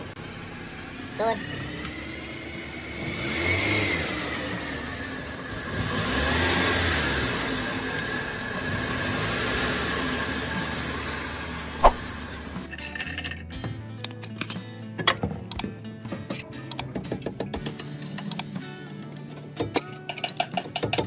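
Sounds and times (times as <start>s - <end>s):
car engine running: 0.0s - 14.6s
high-pitched squeal: 1.2s - 12.8s.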